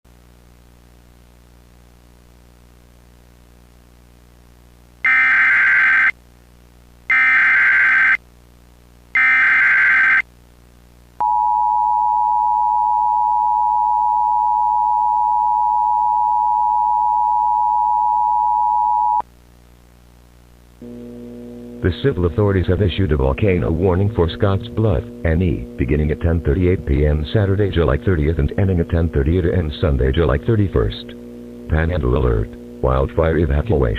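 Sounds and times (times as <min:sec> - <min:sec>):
low steady hum: 0:10.2 - 0:33.9.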